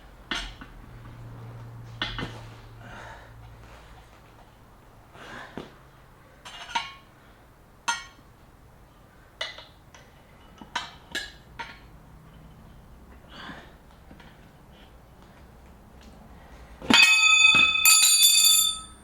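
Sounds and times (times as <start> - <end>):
tyre levers clinking on rim: 16.9 - 19.0.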